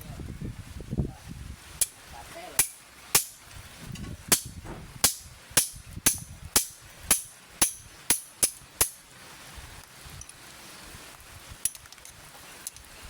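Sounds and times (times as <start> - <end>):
hammer striking metal: 2.6 - 3.4, 4.3 - 9.0.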